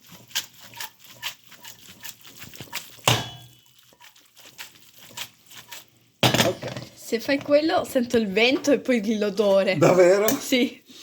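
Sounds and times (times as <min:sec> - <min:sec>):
utensil clinking against pan: 0:03.0 - 0:03.7.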